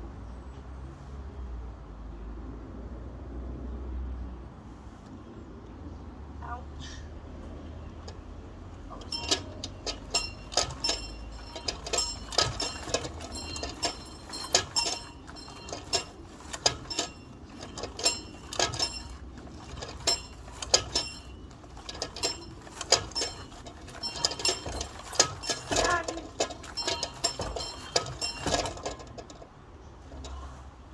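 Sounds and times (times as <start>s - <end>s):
bell ringing: 9.0s - 28.6s.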